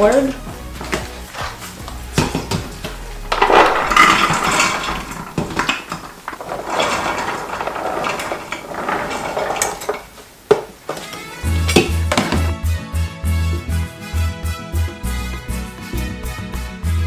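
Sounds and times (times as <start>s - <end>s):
chickpeas rattling into metal pot: 1.6s - 10.2s.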